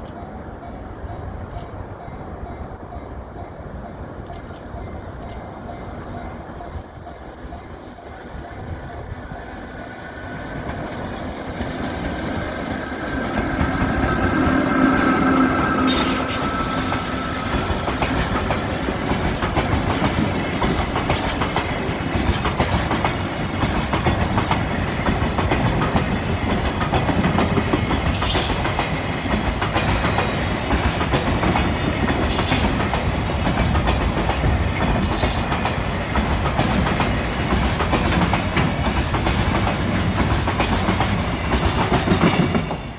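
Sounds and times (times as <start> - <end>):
freight train passing: 0.0 - 42.9
wheels clacking over rail joints: 10.6 - 42.8.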